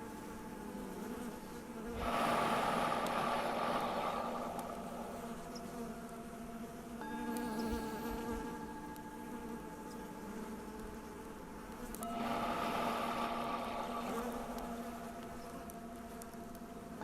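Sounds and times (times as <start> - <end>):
bees buzzing: 0.0 - 17.0
singing bowl ringing: 4.2 - 17.0.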